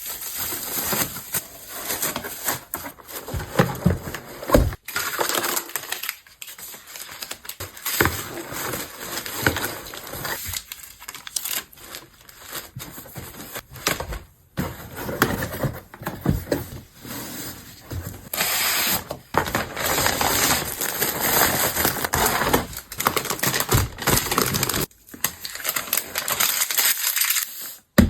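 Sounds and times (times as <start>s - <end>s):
paper or plastic crinkling: 17.8s - 28.0s.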